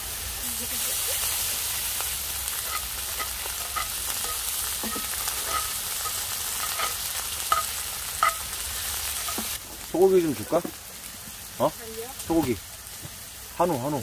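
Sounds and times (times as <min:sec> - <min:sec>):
beef sizzling: 0:00.0 - 0:14.0.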